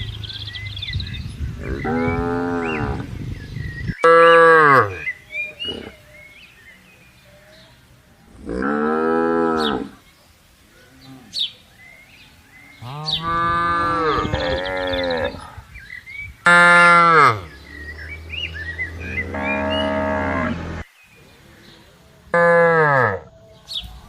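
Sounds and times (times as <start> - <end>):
cattle mooing: 16.5 - 20.9.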